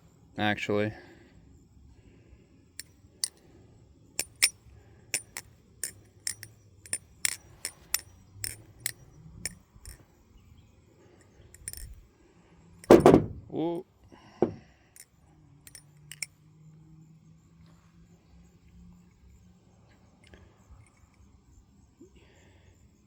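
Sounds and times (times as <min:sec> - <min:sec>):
butterfly knife metallic clicks: 0:04.2 - 0:04.5, 0:05.2 - 0:09.0, 0:11.6 - 0:12.0, 0:15.7 - 0:16.3.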